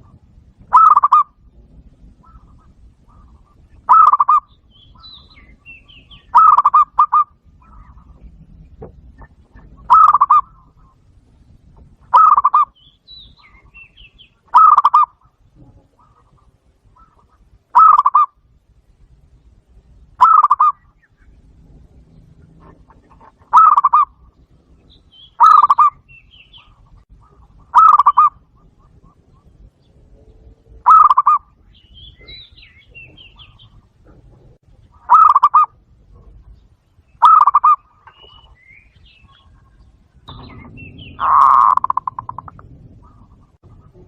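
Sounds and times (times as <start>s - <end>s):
dove coos through speaker: 0.0s - 1.4s, 2.2s - 8.2s, 9.2s - 11.0s, 12.1s - 12.8s, 14.5s - 18.4s, 20.2s - 20.9s, 22.4s - 24.4s, 25.4s - 26.6s, 27.2s - 29.6s, 30.5s - 31.6s, 32.2s - 36.4s, 37.2s - 38.6s, 40.3s - 44.0s
small birds chirping: 0.0s - 44.0s.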